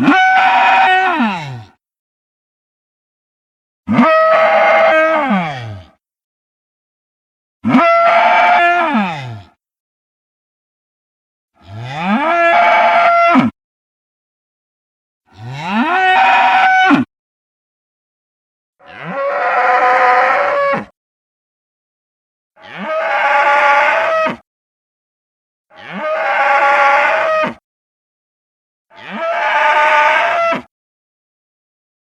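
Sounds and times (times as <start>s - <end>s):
deep dinosaur calls: 0.0s - 1.8s, 15.3s - 17.1s.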